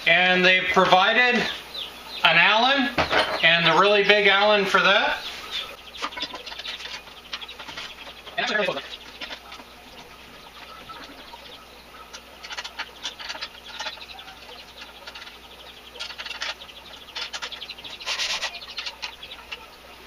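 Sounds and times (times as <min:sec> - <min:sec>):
metal clicks and scrapes: 0:12.1 - 0:14.2, 0:16.0 - 0:19.6.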